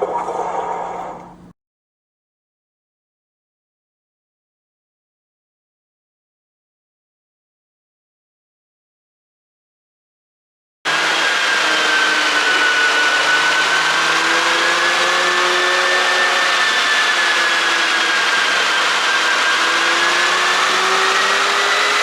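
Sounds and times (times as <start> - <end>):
car engine running: 10.9 - 22.0.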